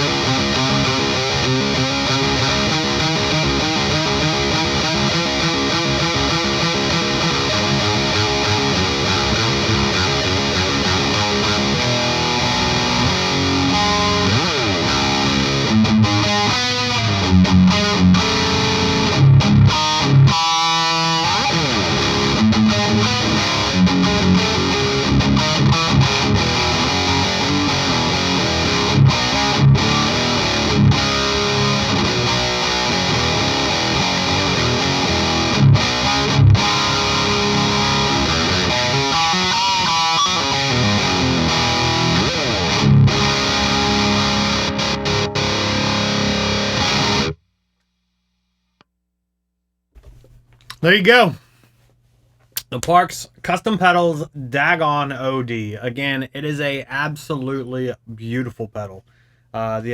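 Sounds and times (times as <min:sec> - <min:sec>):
distorted electric guitar riff: 0:00.0 - 0:47.4.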